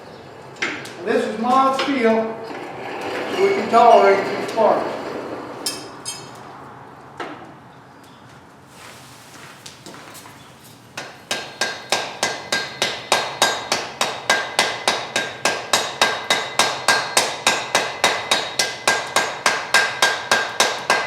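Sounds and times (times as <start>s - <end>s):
hammer striking steel on anvil: 11.0s - 21.0s.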